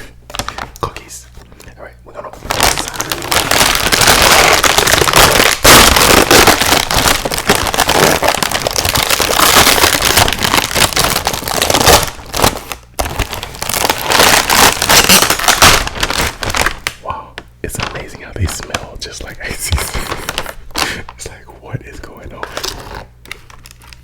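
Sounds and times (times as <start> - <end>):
wrapper crinkling and tearing: 0.3 - 1.1, 2.4 - 17.0, 17.7 - 21.4, 22.3 - 24.0.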